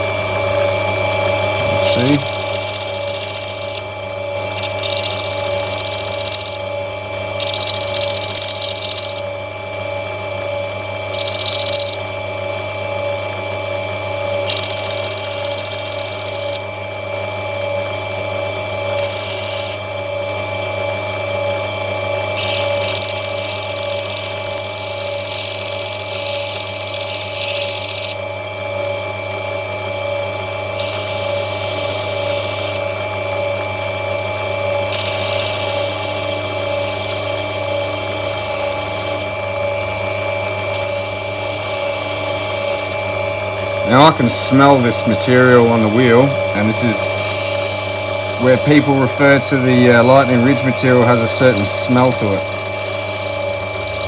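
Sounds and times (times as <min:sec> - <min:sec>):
grinding machine motor humming: 0:00.0 - 0:09.4, 0:30.6 - 0:54.0
stone hissing on grinding wheel: 0:01.6 - 0:03.9, 0:04.5 - 0:06.6, 0:07.4 - 0:09.3, 0:11.1 - 0:12.0, 0:14.4 - 0:16.6, 0:19.0 - 0:19.8, 0:22.4 - 0:28.2, 0:30.8 - 0:32.8, 0:34.9 - 0:39.3, 0:40.7 - 0:43.0, 0:43.9 - 0:54.0.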